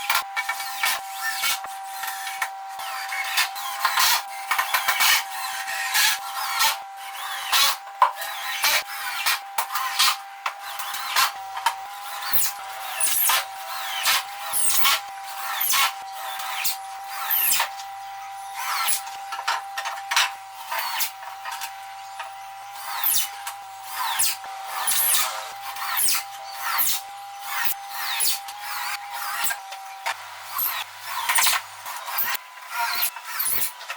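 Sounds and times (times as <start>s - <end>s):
power drill drilling plywood: 20.6s - 33.8s.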